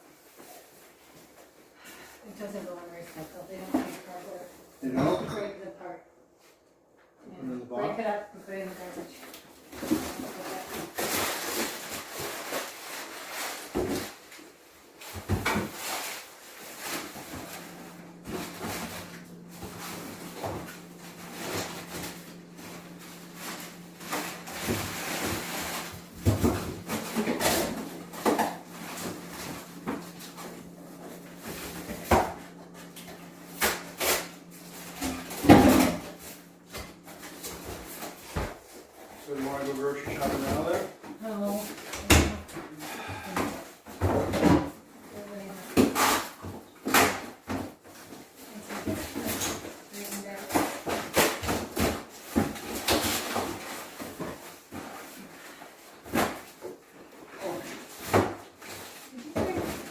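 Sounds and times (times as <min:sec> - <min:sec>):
steady low hum: 0:15.0 - 0:44.3.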